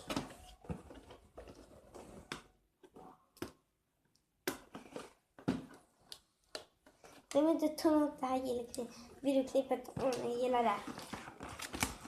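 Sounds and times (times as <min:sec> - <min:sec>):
cardboard package being opened: 0:10.8 - 0:12.0.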